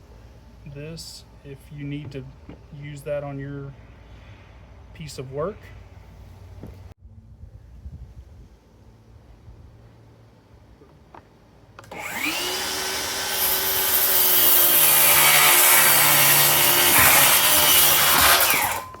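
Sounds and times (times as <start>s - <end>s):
circular saw cutting wood: 11.8s - 19.0s.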